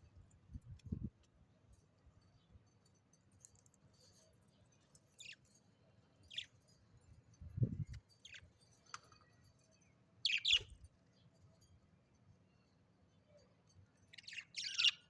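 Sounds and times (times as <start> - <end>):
small bird chirping: 5.1 - 5.6, 6.2 - 6.7, 7.5 - 11.3, 13.3 - 15.0.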